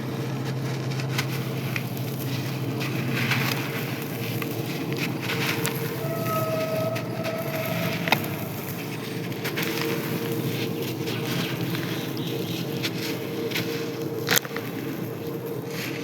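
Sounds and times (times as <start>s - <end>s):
clay crunching and crumbling: 0.0s - 6.4s.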